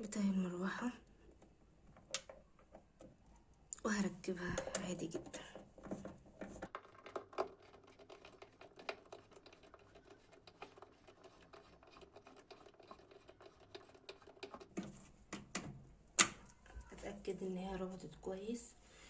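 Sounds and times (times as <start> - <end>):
screwdriver clicking and scraping: 4.5 - 14.9.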